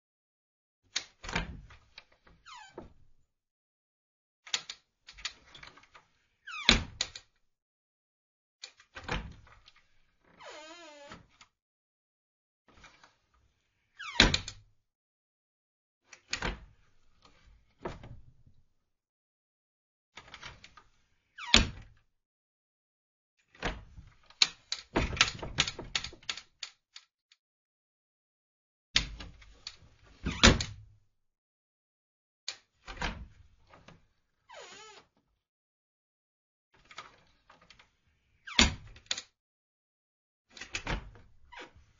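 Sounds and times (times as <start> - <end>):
cupboard door squeak: 10.4 - 11.2, 34.5 - 35.0
wooden cupboard door creaking: 10.4 - 11.3, 24.9 - 26.2, 30.3 - 30.8, 34.5 - 35.1.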